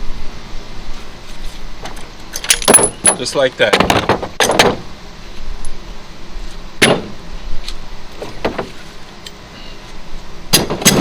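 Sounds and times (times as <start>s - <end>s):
metal tools clanking: 2.3s - 4.6s.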